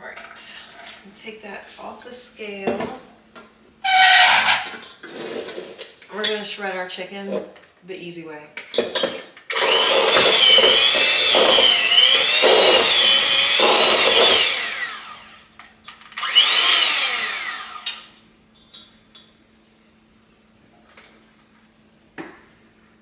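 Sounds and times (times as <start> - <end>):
electric hand mixer whine: 9.5 - 15.5, 16.2 - 18.1.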